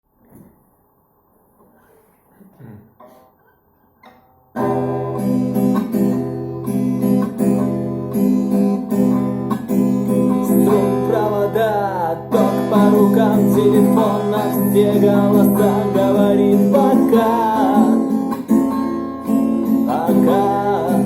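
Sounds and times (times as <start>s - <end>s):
acoustic guitar strumming chords: 4.0s - 21.0s.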